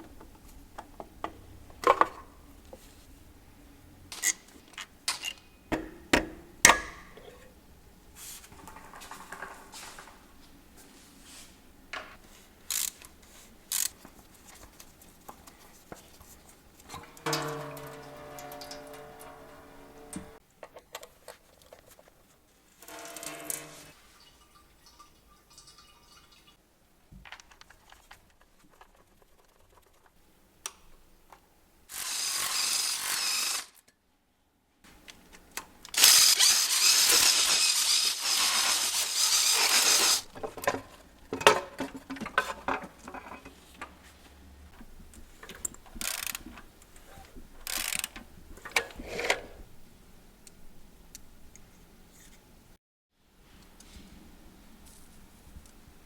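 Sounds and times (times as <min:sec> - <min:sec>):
ratchet clicks: 0:12.7 - 0:13.0, 0:13.7 - 0:14.0, 0:35.9 - 0:40.2, 0:46.0 - 0:46.4, 0:47.6 - 0:48.2
power tool running: 0:17.0 - 0:20.4, 0:31.9 - 0:33.8, 0:36.0 - 0:40.2.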